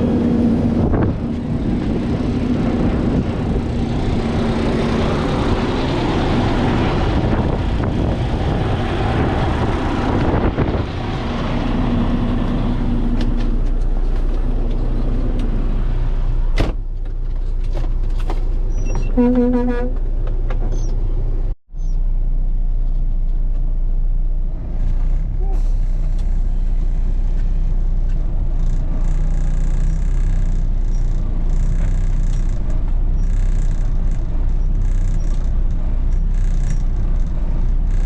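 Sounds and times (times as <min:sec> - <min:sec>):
diesel engine running: 0:00.0 - 0:38.0.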